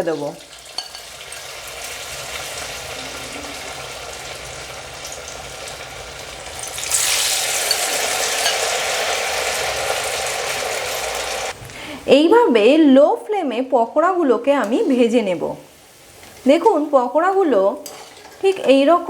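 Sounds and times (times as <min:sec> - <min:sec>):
food sizzling in hot oil: 0:00.0 - 0:11.6.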